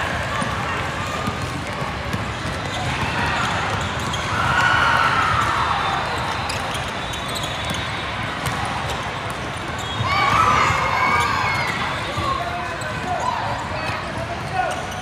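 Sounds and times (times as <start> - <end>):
shoe squeaks on court: 6.4 - 10.1
ball bouncing on hardwood court: 8.4 - 9.5.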